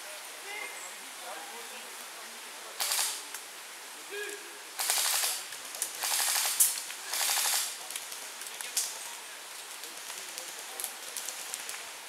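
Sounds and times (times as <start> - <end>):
airsoft guns firing full auto: 4.8 - 5.4, 6.0 - 7.7.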